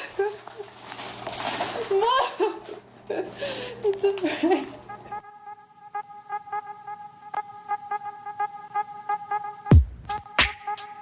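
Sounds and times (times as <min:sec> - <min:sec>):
background music with repeated notes: 0:04.9 - 0:11.0.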